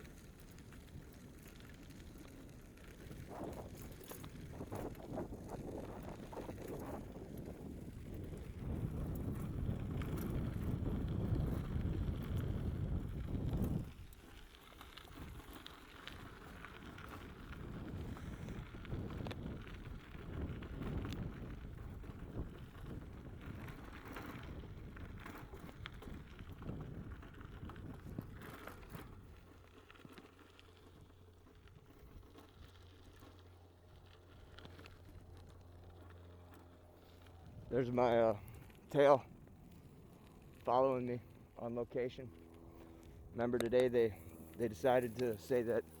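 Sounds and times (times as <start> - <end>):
bicycle tyre and frame rattle: 0.0 - 46.0
wind on microphone: 3.2 - 14.1, 17.7 - 29.1.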